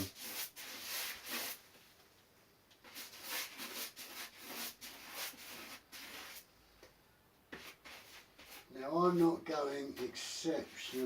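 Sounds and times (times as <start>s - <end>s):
brush strokes swishing: 7.6s - 11.0s.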